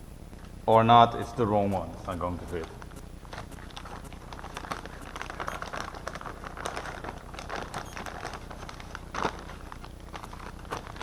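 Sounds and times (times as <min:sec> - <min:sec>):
packaging rustling and clicking: 0:02.6 - 0:11.0.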